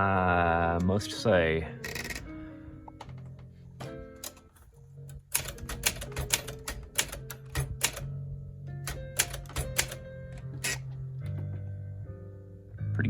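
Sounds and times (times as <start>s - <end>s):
background music: 0.0s - 13.0s
manual typewriter typebar strikes: 1.8s - 2.3s, 3.8s - 8.2s, 8.8s - 11.3s.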